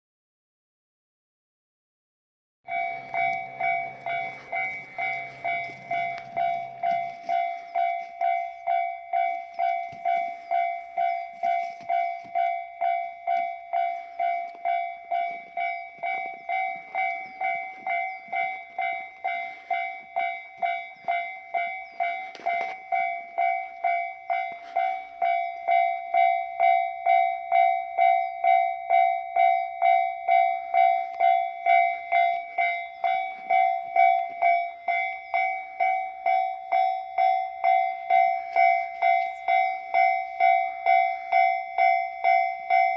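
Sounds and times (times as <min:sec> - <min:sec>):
level crossing warning bell: 0:02.7 - 0:42.9
low hum: 0:02.7 - 0:42.9.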